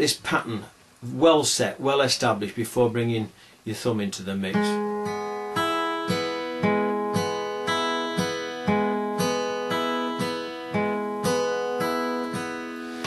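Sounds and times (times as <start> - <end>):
fingerpicked acoustic guitar: 4.5 - 13.0.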